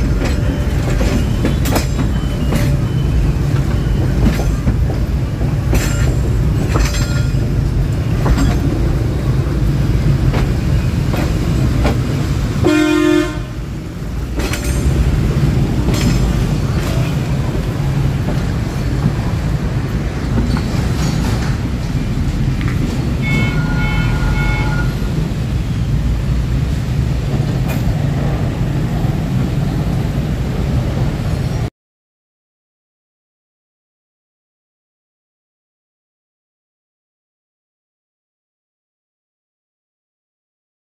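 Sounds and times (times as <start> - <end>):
wheels clicking over rail joints: 0.0 - 12.5, 13.8 - 24.2
locomotive engine rumbling: 0.0 - 31.7
train horn blast: 12.6 - 13.7, 23.2 - 25.2.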